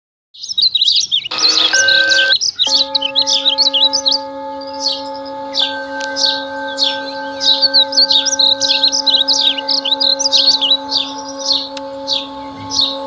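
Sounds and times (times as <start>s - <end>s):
birds chirping: 0.4s - 13.0s
struck bell tones: 1.3s - 13.0s.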